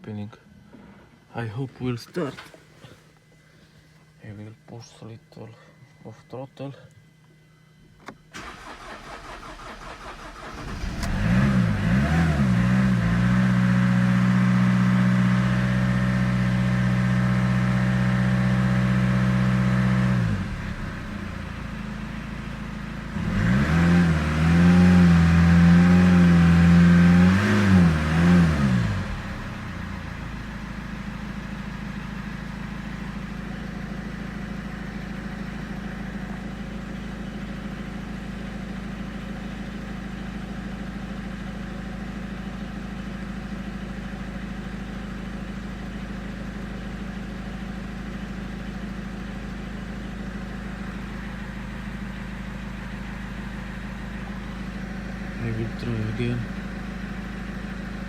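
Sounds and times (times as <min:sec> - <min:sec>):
car engine idling: 0:08.3 - 0:58.0
car engine revving: 0:08.4 - 0:21.0, 0:23.1 - 0:30.6.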